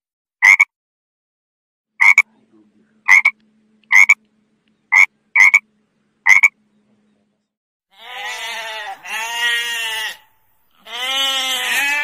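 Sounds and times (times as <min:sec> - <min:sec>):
frog croaking: 0:00.4 - 0:00.7, 0:02.0 - 0:02.3, 0:03.0 - 0:04.2, 0:04.9 - 0:05.6, 0:06.2 - 0:06.6
faint steady hum: 0:02.2 - 0:07.5.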